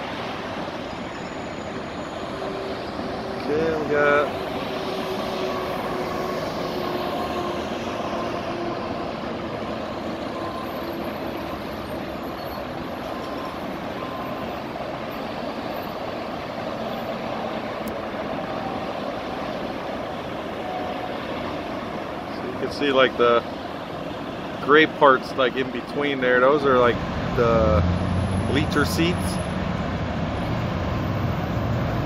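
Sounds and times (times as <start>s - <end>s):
faint engine hums: 0.0s - 32.0s
freeway traffic rushing: 0.0s - 32.0s.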